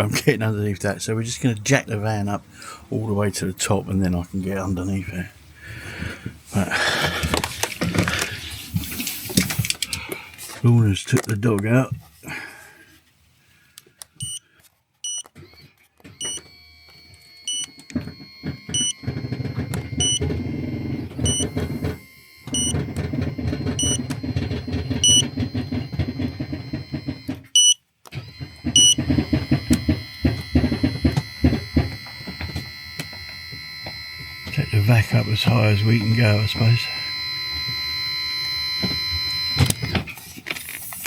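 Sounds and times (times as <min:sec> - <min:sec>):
control beeping: 0:14.2 - 0:14.4, 0:15.0 - 0:15.3, 0:16.2 - 0:40.0
jack motor whining: 0:15.1 - 0:41.0.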